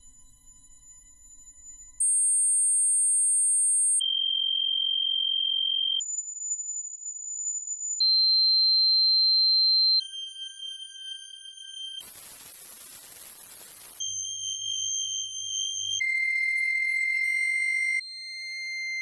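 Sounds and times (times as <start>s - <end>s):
high-pitched ringing tones: 0.0s - 4.1s, 9.4s - 19.0s.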